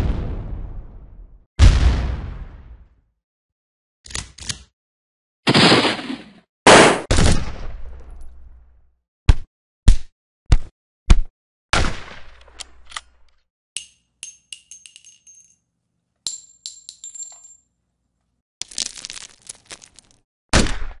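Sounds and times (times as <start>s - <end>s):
sharp gunshot: 5.5s - 7.7s, 20.5s - 21.0s
metal pieces clinking as they drop: 13.8s - 17.8s, 18.6s - 20.2s.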